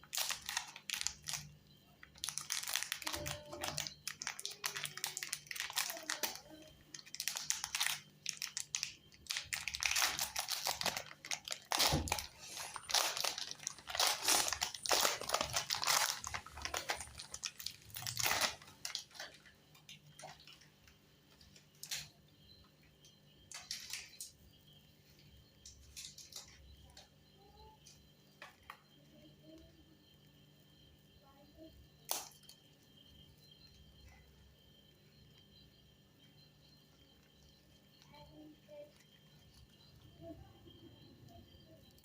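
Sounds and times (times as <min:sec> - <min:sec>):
wafer packet crinkling: 0:00.0 - 0:20.6.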